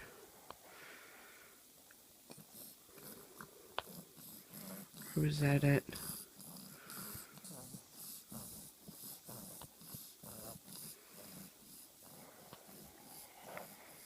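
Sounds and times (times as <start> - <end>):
baby snuffly breathing: 5.9 - 14.0.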